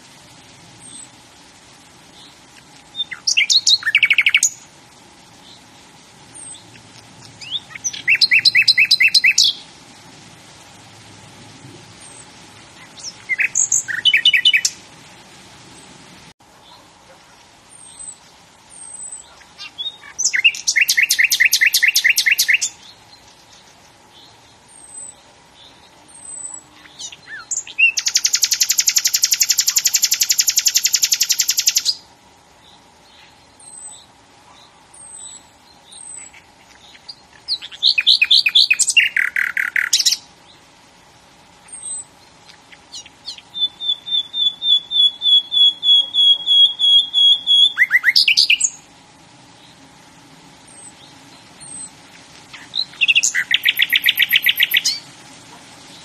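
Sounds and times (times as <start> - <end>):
songbird trilling: 2.2 - 4.7, 6.4 - 9.6, 12.0 - 14.8, 17.7 - 32.0, 35.0 - 40.3, 41.6 - 48.9, 50.7 - 55.0
high bird chips: 51.6 - 55.0.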